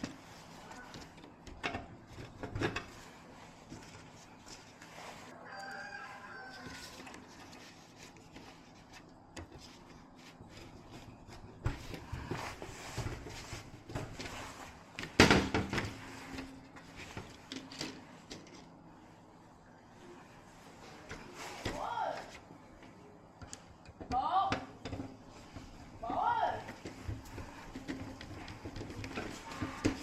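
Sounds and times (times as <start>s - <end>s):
rooster crowing: 5.3s - 7.3s.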